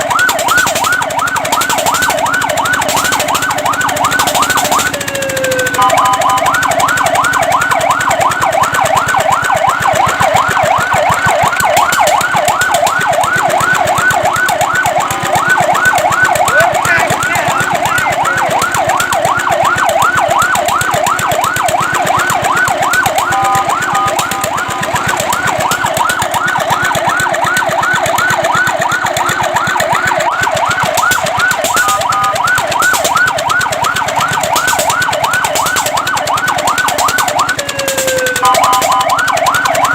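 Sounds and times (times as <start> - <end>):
fire truck siren yelping: 0.0 - 39.9
steady siren tone: 0.0 - 39.9.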